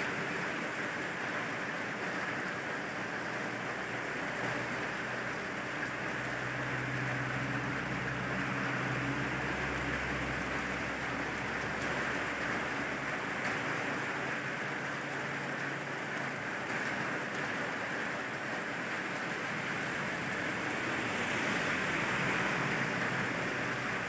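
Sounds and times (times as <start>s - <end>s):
steady rain hiss: 0.0s - 24.0s
vehicle rumble: 3.9s - 13.4s, 19.3s - 24.0s.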